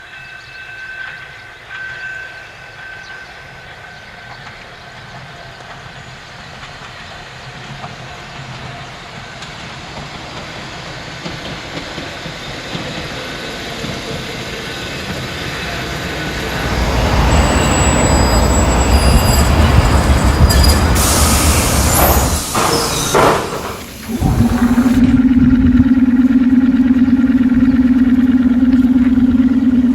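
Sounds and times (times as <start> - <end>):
train rail noise: 0.0 - 25.2
brake squeal: 14.7 - 25.0
heavy low rumble: 15.5 - 23.2, 23.9 - 29.9
thin high-pitched squeal: 16.5 - 25.0.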